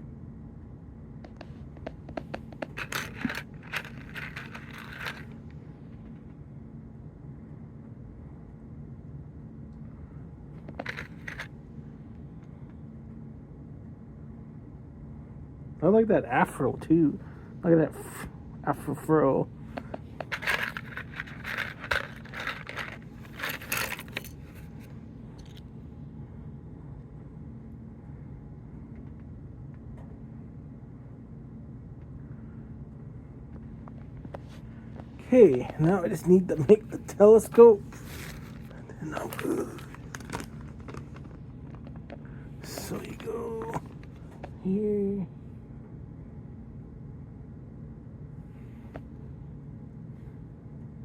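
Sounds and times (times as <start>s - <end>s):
plastic pieces clicking: 2.3s - 5.3s, 20.2s - 24.4s
packaging rustling: 2.5s - 5.4s, 19.9s - 24.9s, 37.6s - 41.9s.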